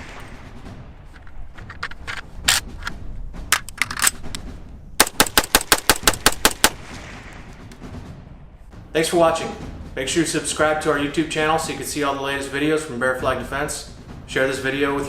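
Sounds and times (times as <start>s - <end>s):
rapid semi-automatic fire: 5.0s - 7.5s
pistol gunshots: 5.0s - 7.6s.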